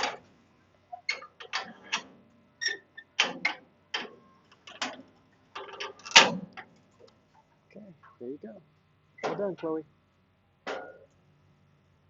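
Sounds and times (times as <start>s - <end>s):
metal gate clanking and latching: 0.0s - 0.3s, 0.9s - 6.8s, 9.2s - 9.8s, 10.6s - 11.1s.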